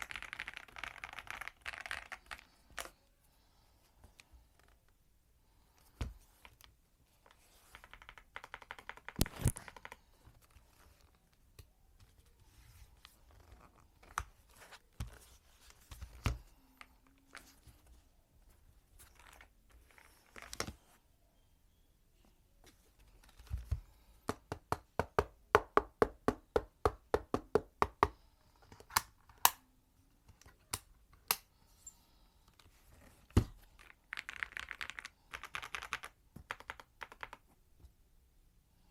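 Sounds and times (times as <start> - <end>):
mechanical keyboard typing: 34.2 - 37.4.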